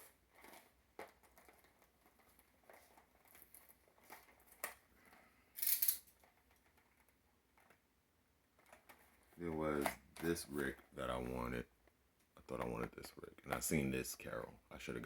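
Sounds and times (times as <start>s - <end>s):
plastic packaging rustle: 0.0s - 7.8s.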